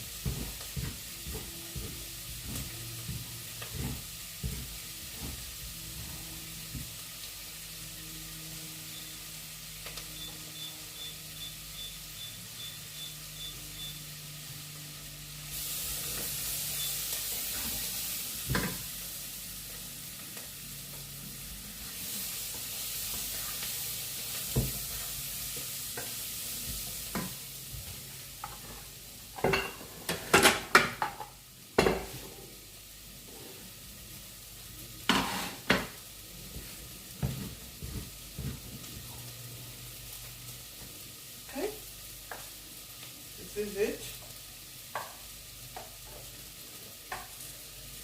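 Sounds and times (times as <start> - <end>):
food sizzling in a frying pan: 0.0 - 48.0
utensil scraping a pan: 35.0 - 36.0.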